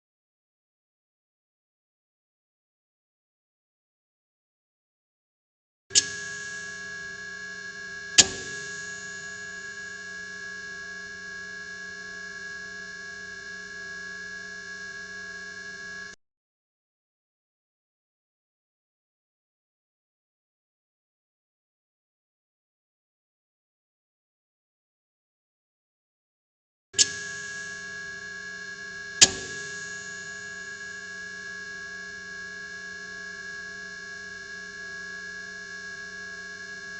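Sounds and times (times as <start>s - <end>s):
electrical buzz with high whine: 5.9s - 16.2s, 27.0s - 36.9s
sharp lamp click: 6.0s - 10.4s, 27.0s - 28.4s, 29.1s - 31.3s
fluorescent light switch click: 8.2s - 8.9s, 29.2s - 29.6s.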